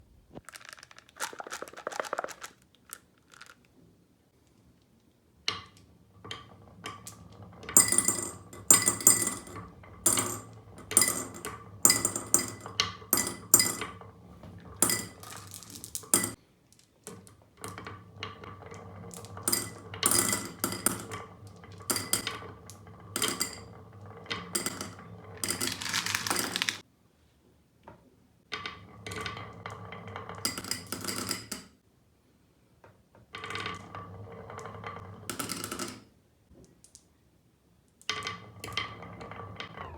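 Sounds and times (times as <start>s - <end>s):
marbles rolling down a track: 0.5s - 3.6s, 6.3s - 16.4s, 17.6s - 26.8s, 29.1s - 31.6s
marbles clicking and clacking: 7.7s - 16.4s, 19.1s - 23.7s, 24.4s - 26.8s.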